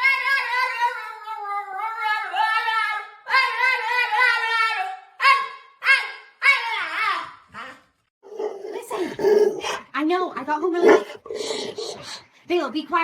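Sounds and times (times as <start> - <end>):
dog howling and whining: 8.2 - 9.9, 10.8 - 12.2.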